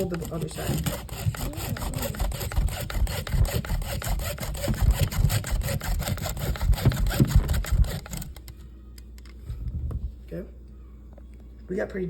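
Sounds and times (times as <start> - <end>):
hand saw cutting: 0.0 - 8.3.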